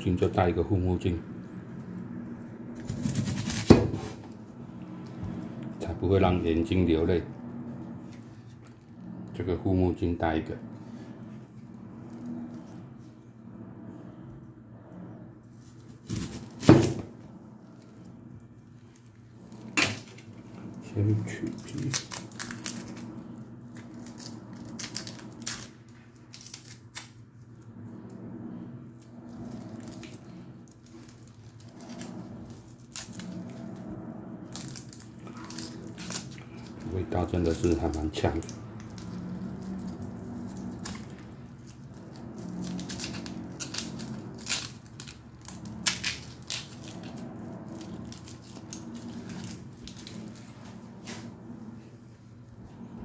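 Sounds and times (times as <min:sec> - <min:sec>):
steady low hum: 0:00.0 - 0:53.0
onion skin peeled crackling: 0:20.9 - 0:27.3, 0:29.0 - 0:33.6, 0:34.5 - 0:50.6.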